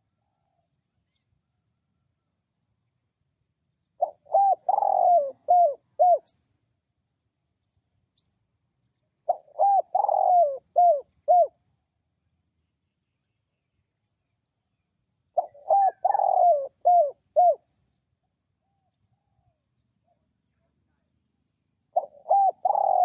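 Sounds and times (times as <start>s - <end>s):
dove cooing: 4.0s - 6.4s, 9.2s - 11.6s, 15.4s - 17.8s, 22.0s - 23.0s.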